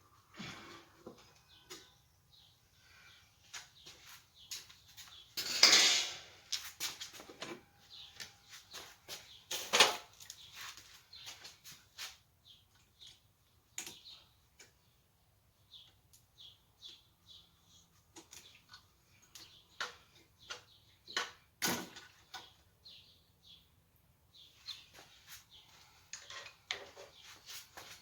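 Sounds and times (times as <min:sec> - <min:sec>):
metal tools clinking and knocking: 0:05.4 - 0:07.6.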